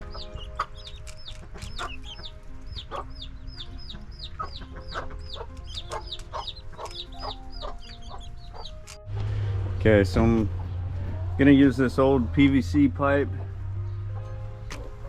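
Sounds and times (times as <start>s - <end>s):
chickens clucking: 0.0s - 9.0s.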